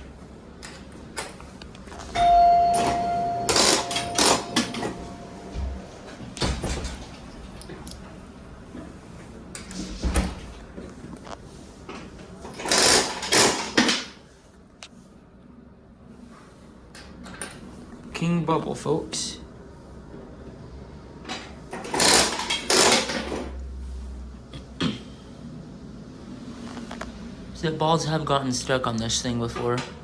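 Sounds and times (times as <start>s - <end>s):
bell ringing: 2.2s - 6.1s.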